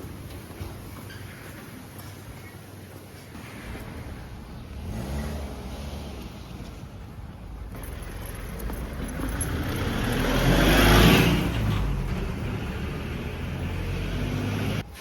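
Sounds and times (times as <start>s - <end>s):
vehicle driving past: 3.4s - 14.8s.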